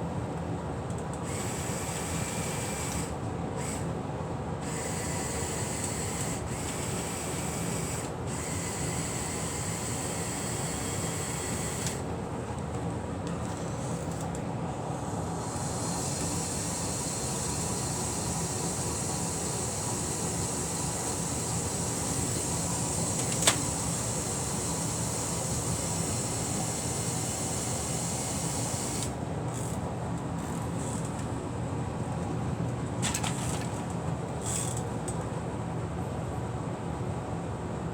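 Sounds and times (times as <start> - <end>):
toy motors and gears whirring: 1.3 - 3.8, 4.6 - 12.0, 15.4 - 29.8.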